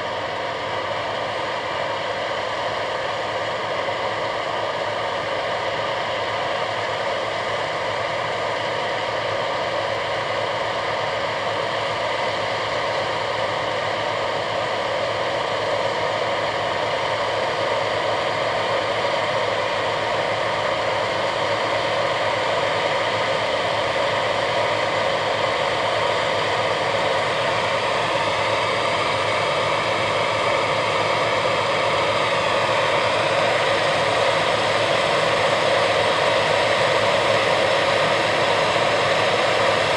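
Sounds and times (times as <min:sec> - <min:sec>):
combine harvester droning: 0:24.3 - 0:39.9.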